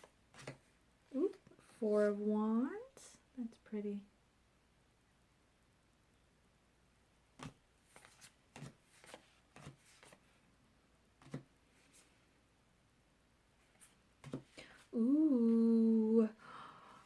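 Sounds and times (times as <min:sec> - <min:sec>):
cards tapping and rustling: 0:00.0 - 0:00.7, 0:07.4 - 0:10.3, 0:11.2 - 0:12.1, 0:13.7 - 0:14.6.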